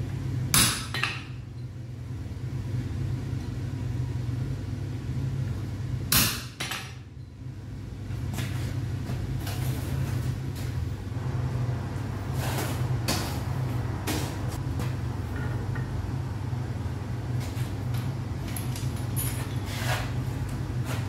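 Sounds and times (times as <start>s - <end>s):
metal tools knocking and clanking: 15.3s - 16.0s.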